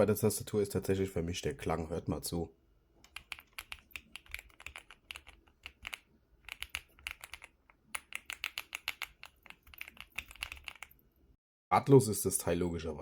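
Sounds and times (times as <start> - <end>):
mechanical keyboard typing: 3.0 - 11.0.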